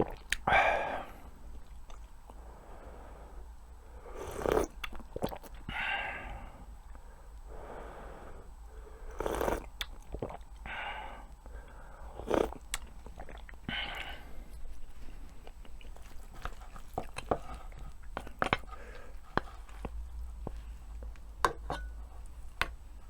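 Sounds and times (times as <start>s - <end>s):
wet mouth sounds: 0.0s - 0.6s, 4.2s - 5.7s, 9.1s - 10.7s, 12.1s - 20.6s
person chewing food: 1.5s - 2.4s, 4.2s - 5.7s, 9.1s - 10.7s, 11.5s - 22.4s.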